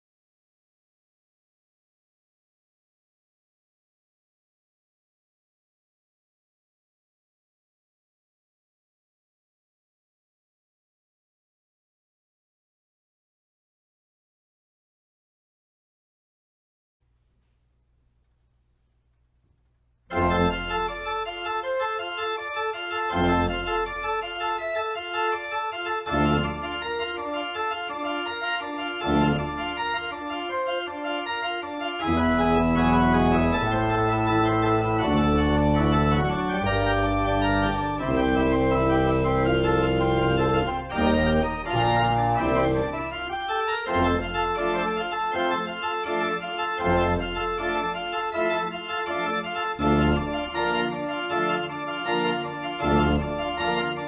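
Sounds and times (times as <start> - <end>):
low organ bass notes: 20.1 - 54.0
organ playing sustained chords: 20.1 - 54.0.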